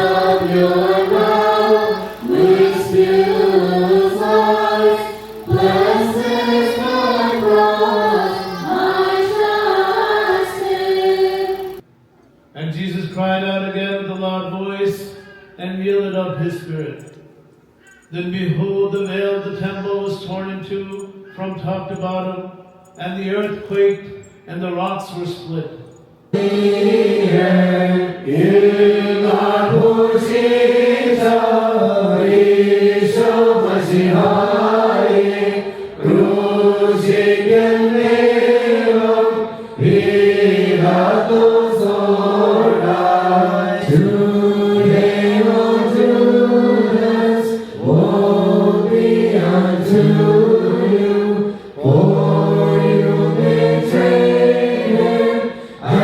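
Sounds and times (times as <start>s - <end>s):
choir chanting a hymn in unison: 0.0s - 11.8s, 26.3s - 56.0s.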